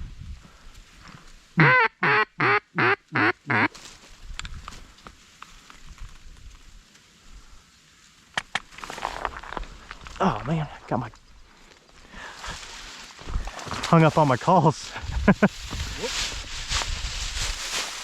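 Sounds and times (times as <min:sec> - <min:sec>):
duck call quacks: 0:01.6 - 0:03.7.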